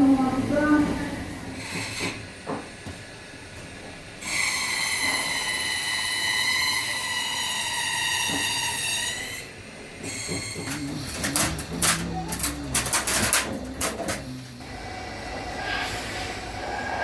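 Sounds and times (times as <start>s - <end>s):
machinery metallic squeal: 10.1s - 14.5s.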